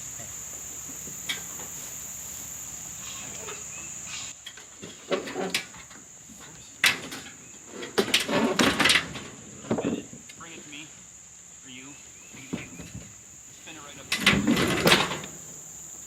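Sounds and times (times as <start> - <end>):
insects chirring: 0.0 - 16.0
sharp knocks and clatters: 14.0 - 15.4.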